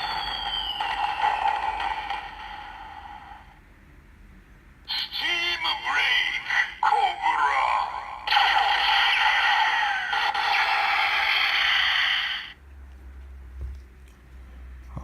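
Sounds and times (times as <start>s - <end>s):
toy electronic sound effect: 0.0s - 3.6s, 4.9s - 12.6s.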